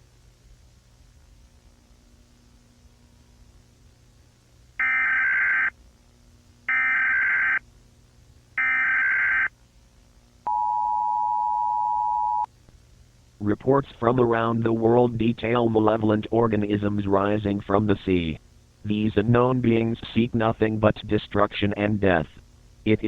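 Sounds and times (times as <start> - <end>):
two-tone attention signal: 10.5 - 12.5.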